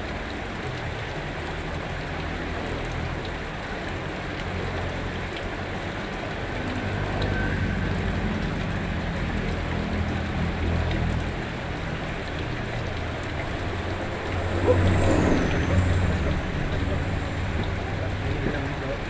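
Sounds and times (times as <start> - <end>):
water rushing: 0.0 - 19.0
low rumble: 6.6 - 19.0.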